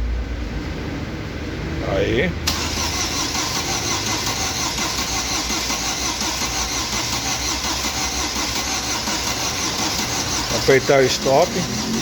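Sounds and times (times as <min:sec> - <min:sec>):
car engine cranking: 0:02.4 - 0:12.0.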